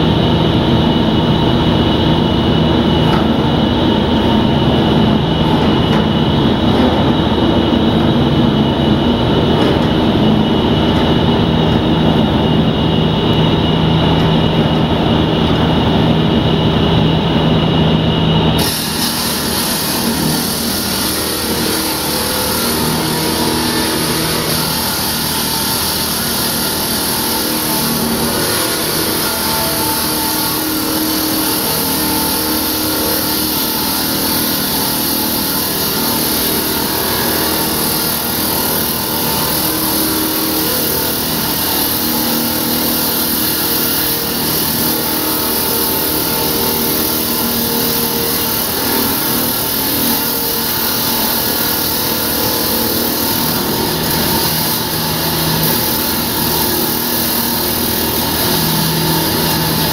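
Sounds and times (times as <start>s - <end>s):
concrete saw cutting: 0.0s - 59.9s.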